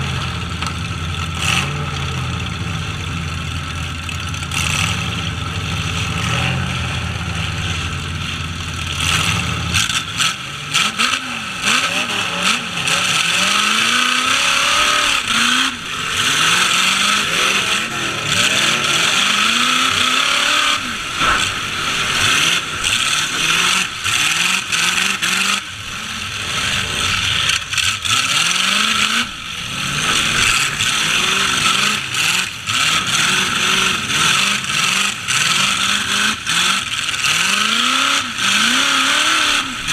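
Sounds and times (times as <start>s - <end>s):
truck engines revving: 0.0s - 39.9s
impact bangs: 20.8s - 24.4s.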